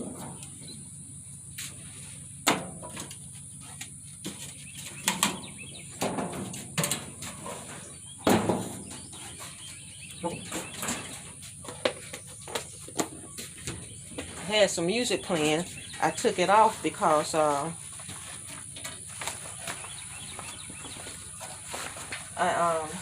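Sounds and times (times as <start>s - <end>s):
knocks and clanks of grill parts: 2.4s - 14.5s.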